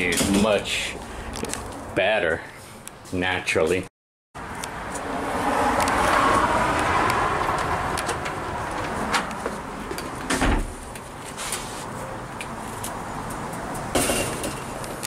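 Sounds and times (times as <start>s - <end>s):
vehicle passing: 4.4s - 15.0s.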